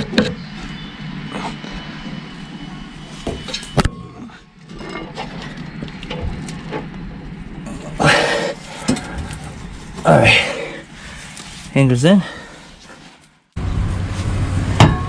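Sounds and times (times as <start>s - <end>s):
metal clanks and knocks: 14.8s - 15.0s.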